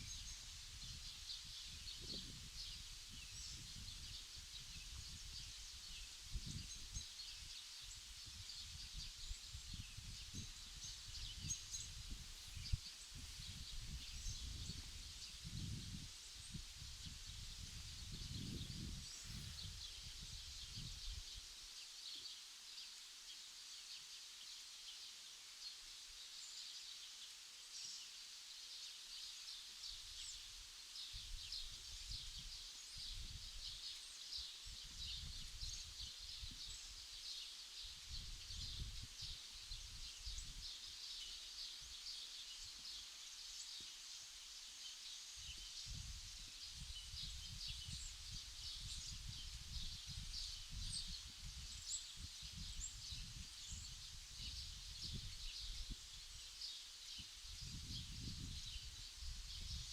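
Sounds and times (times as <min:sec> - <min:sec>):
wind rumbling on microphone: 0:00.0 - 0:21.4, 0:31.2 - 0:33.8, 0:34.6 - 0:36.8, 0:38.0 - 0:40.8, 0:45.4 - 0:56.4, 0:57.2 - 0:59.9.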